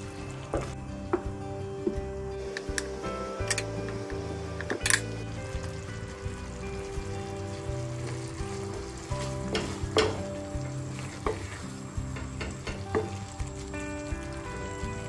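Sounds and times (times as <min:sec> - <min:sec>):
food sizzling in a frying pan: 0:00.0 - 0:15.0
spatula knocking and scraping pan: 0:09.2 - 0:10.3.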